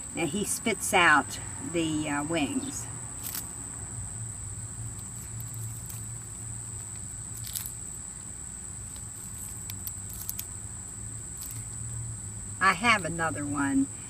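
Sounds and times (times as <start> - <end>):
faint crunching clicks: 4.9 - 8.0, 8.9 - 10.5, 11.4 - 11.8.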